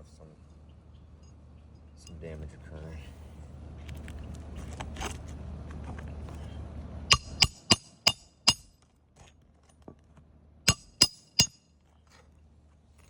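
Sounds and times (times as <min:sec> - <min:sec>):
hammer striking metal: 0:07.1 - 0:08.7, 0:10.7 - 0:11.6.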